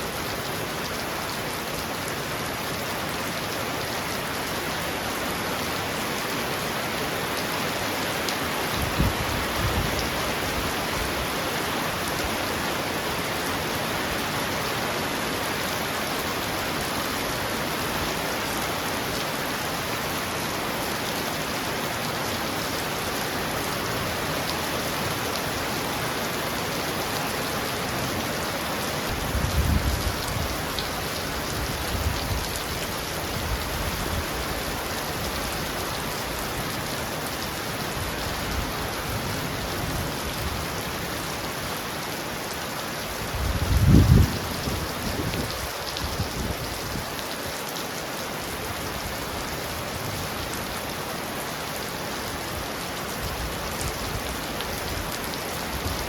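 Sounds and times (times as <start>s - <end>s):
heavy rain on a roof: 0.0s - 56.0s.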